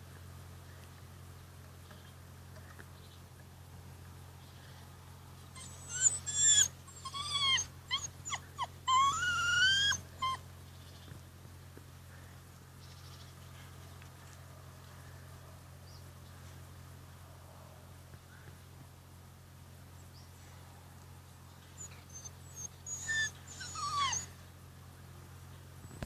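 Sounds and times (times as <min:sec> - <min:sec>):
puppy whining: 0:05.5 - 0:10.4, 0:21.8 - 0:24.4.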